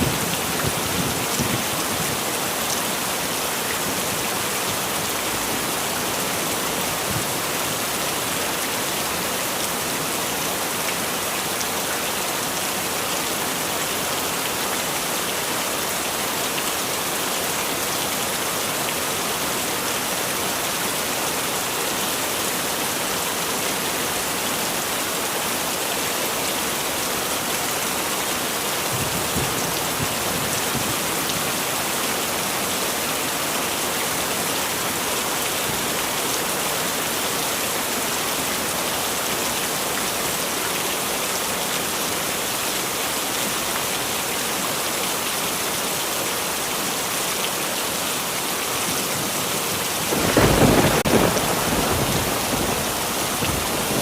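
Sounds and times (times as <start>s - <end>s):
heavy rain hiss: 48.1s - 54.0s.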